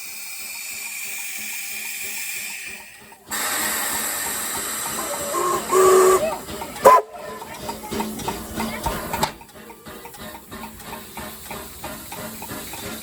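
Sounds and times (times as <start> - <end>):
steam locomotive hissing steam: 0.0 - 13.0
rising whistle toot: 5.0 - 7.1
short whistle blasts: 5.3 - 6.2.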